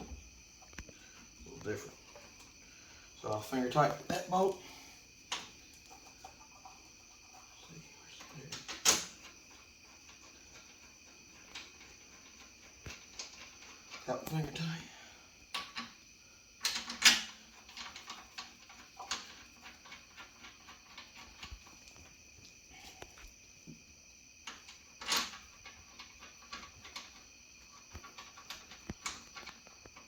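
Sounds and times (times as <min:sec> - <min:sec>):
bolts clicking and knocking: 0:05.3 - 0:07.6, 0:08.2 - 0:14.7, 0:15.5 - 0:16.0, 0:16.6 - 0:22.2, 0:24.4 - 0:30.0.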